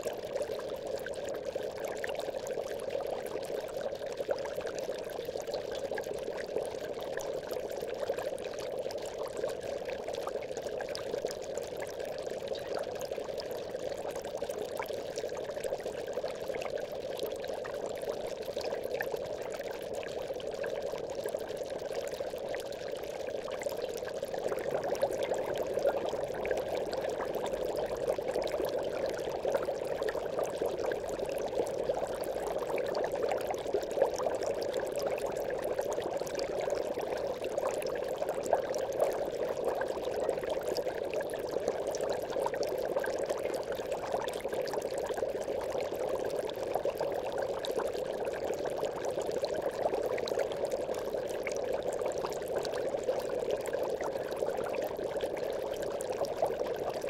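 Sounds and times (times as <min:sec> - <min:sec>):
aquarium bubbling: 0:00.0 - 0:57.0.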